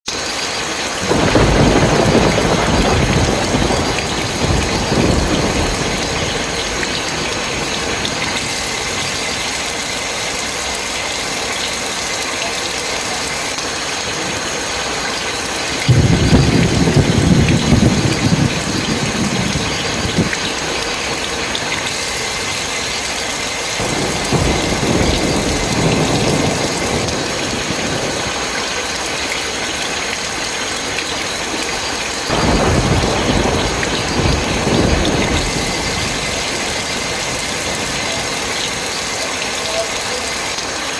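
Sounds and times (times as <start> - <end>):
heavy rain hissing: 0.1 - 40.9
low rumbles: 15.4 - 28.4.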